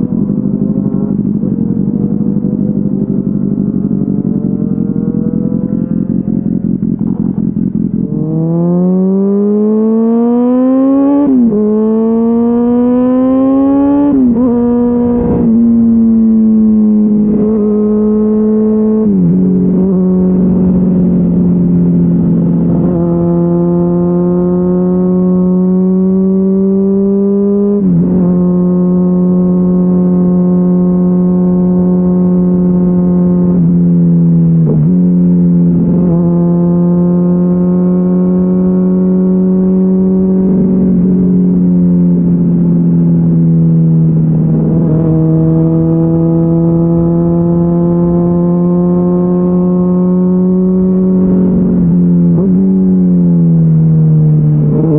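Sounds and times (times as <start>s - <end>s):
motorcycle engine revving: 0.0s - 54.9s.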